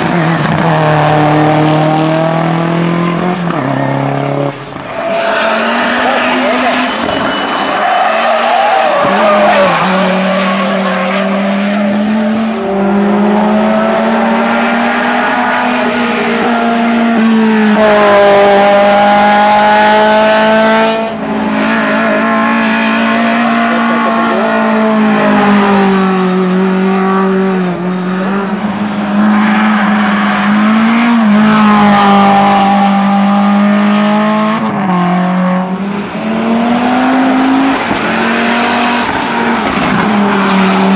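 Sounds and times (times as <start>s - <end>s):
race car engine at high revs: 0.0s - 40.9s
tyre squeal: 4.9s - 12.3s.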